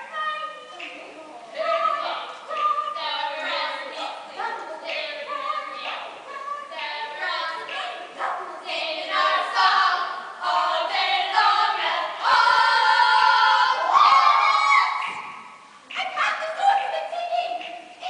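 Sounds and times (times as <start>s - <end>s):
group singing a cappella: 1.5s - 15.0s.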